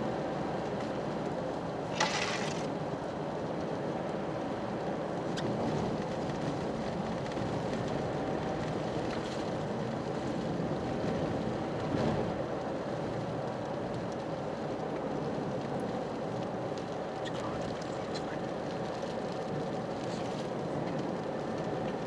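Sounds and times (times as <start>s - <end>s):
tyre rumble on a winter road: 0.5s - 17.2s.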